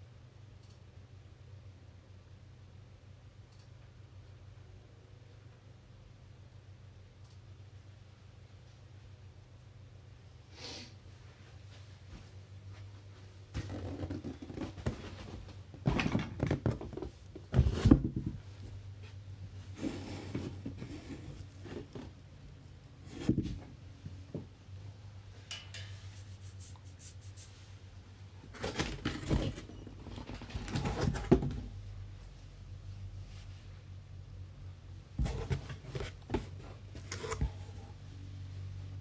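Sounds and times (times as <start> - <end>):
card boxes and packs rustling: 28.4 - 31.7, 35.2 - 37.8.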